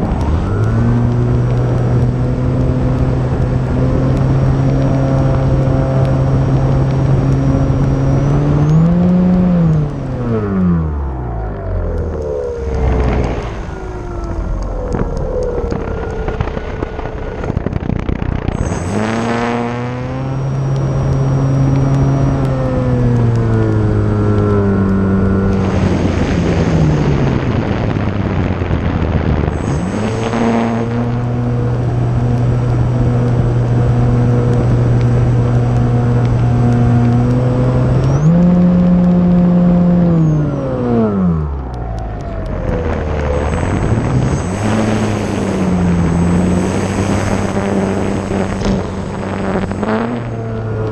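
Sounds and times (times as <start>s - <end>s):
electric motor and propeller whine: 0.0s - 50.9s
wind rushing: 10.0s - 20.2s, 40.7s - 50.9s.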